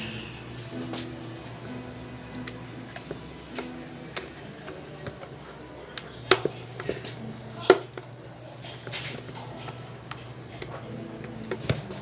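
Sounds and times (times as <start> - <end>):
plastic clips snapping: 2.3 - 5.3, 5.9 - 12.0.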